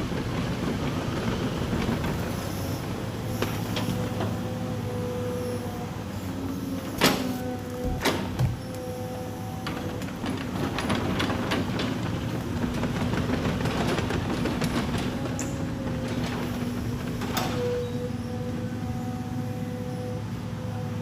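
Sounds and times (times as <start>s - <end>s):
excavator engine droning: 0.0s - 21.0s
knocks and clatter of logs: 6.9s - 8.9s, 9.5s - 17.9s.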